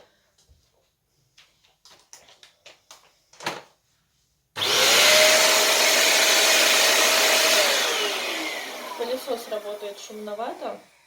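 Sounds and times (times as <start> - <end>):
vacuum cleaner motor whine: 4.6 - 10.4.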